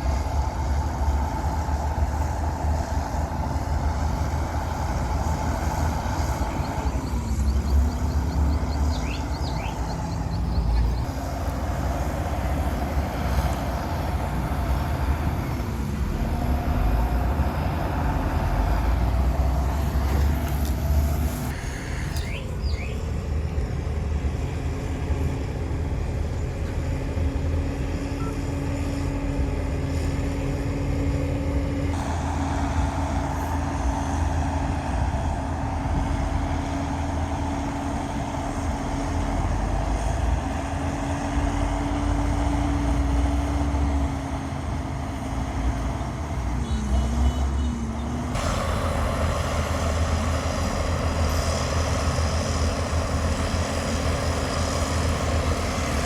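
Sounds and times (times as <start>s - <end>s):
heavy machinery diesel engines: 0.0s - 56.0s
steady whine: 31.8s - 40.6s.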